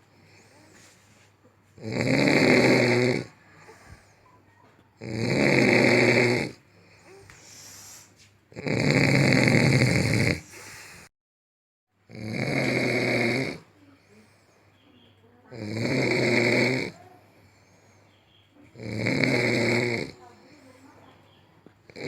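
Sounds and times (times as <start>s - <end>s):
woman snoring loudly: 1.8s - 4.1s, 5.0s - 7.8s, 8.6s - 11.1s, 12.1s - 13.7s, 15.5s - 17.1s, 18.8s - 20.4s.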